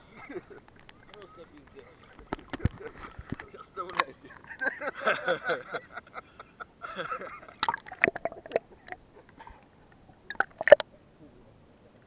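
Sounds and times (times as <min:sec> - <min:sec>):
water splashing and dripping: 0:00.6 - 0:04.4, 0:07.6 - 0:09.4, 0:10.1 - 0:10.9.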